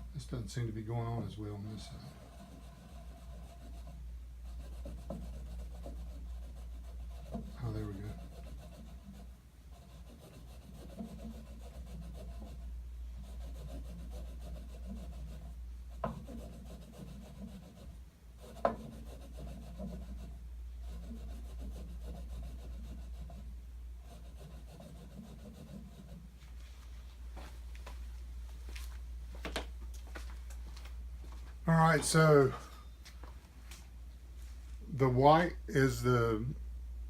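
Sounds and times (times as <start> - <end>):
steady low hum: 0.0 - 37.0
polishing compound rubbing on wheel: 4.6 - 15.5, 24.1 - 26.3.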